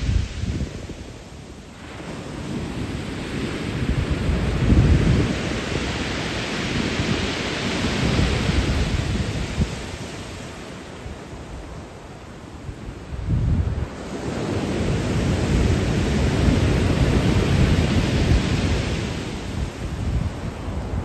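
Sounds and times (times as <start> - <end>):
surf on a pebble beach: 0.0 - 21.0
wind on the microphone: 0.0 - 21.0.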